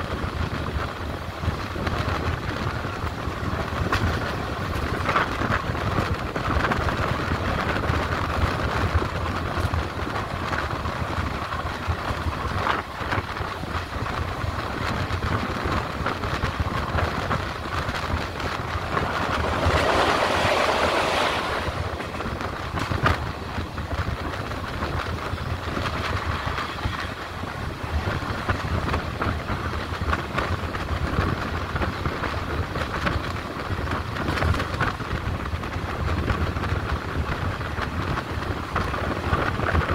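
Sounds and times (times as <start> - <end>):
train wheels rumbling on track: 0.0 - 39.9
rush of noise: 11.9 - 31.8.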